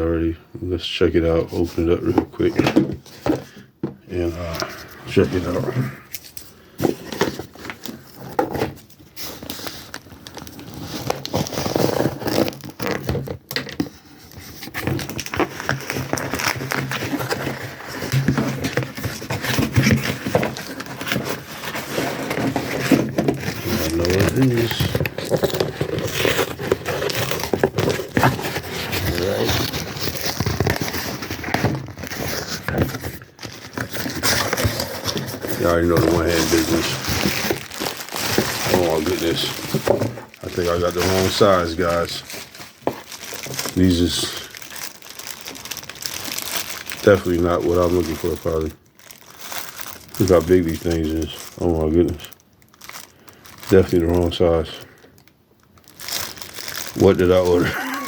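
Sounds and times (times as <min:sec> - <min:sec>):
packaging crinkling and scraping: 0:01.2 - 0:58.0
packaging being torn open: 0:14.5 - 0:54.6, 0:55.8 - 0:58.0.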